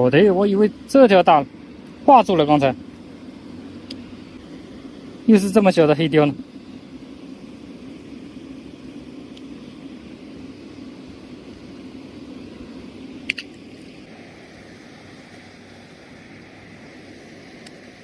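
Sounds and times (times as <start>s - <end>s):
sharp click: 13.2s - 13.6s.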